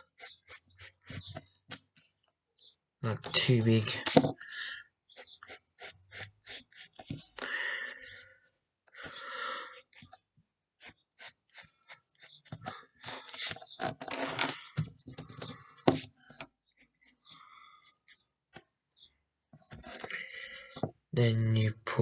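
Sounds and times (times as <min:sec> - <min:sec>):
pencil scratching on paper: 0:00.0 - 0:02.2, 0:05.0 - 0:10.2, 0:10.8 - 0:13.6, 0:14.8 - 0:18.6.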